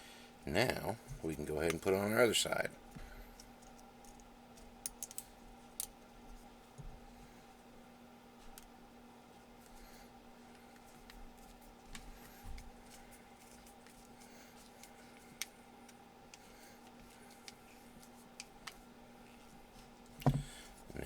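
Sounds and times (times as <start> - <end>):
low electrical hum: 0.0 - 21.0.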